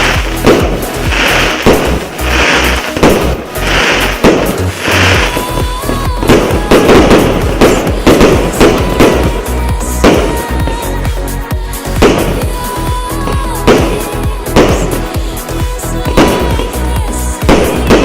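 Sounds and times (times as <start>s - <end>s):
firework shots firing: 0.0s - 10.9s, 11.9s - 12.6s, 13.3s - 15.2s, 16.0s - 16.8s, 17.4s - 18.0s
background music: 0.0s - 18.0s
firework hissing: 0.0s - 18.0s.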